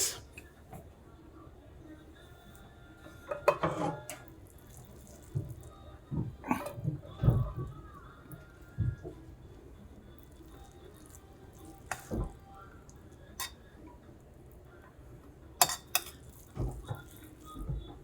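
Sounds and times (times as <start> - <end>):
spoon clinking against metal pot: 3.2 - 5.1, 10.6 - 12.4, 13.4 - 13.7, 15.6 - 17.5.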